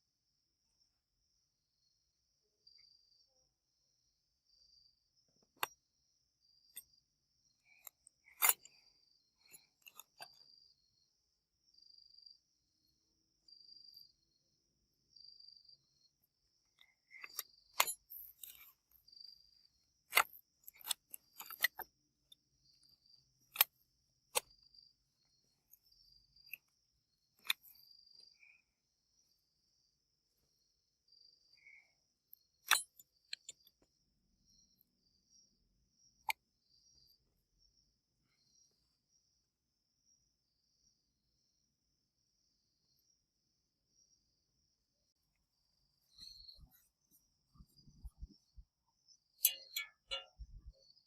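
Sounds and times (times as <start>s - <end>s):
cricket chirping: 0.0s - 51.0s
sharp clicks and clinks: 7.8s - 8.8s, 9.4s - 10.4s, 17.1s - 19.0s, 20.1s - 21.9s, 27.4s - 27.8s, 32.6s - 33.8s, 49.4s - 51.0s.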